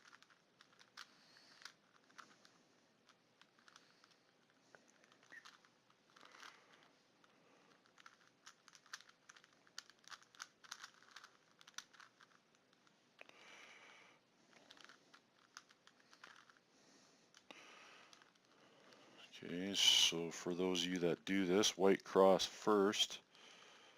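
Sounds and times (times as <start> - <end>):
puzzle cube clicking: 0.0 - 2.4, 3.0 - 13.3, 14.6 - 16.6
soft breathy rush: 16.0 - 20.6.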